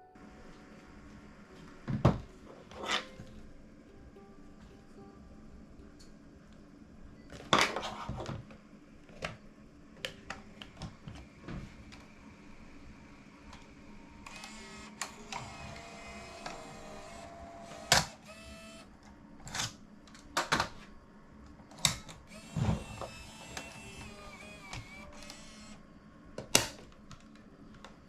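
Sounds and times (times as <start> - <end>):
tape transport motor whine: 10.6 - 19.2, 21.8 - 25.9.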